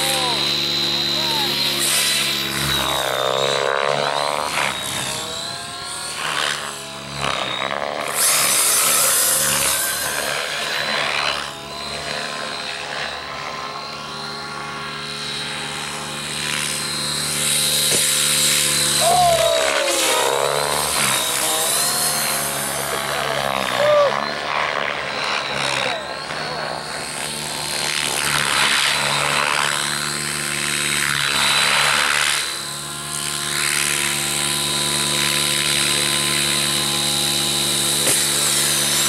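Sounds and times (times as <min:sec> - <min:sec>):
whines sweeping in pitch: 0:00.0 - 0:28.0
rc helicopter rotors droning: 0:00.0 - 0:39.0.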